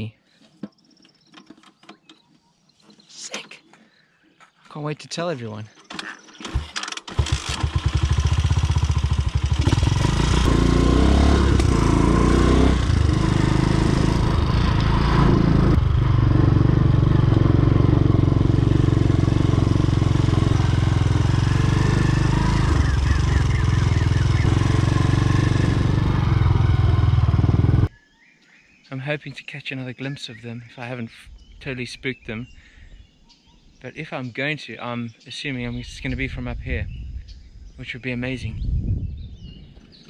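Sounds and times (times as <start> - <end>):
small motorcycle engine revving: 6.0 - 27.9.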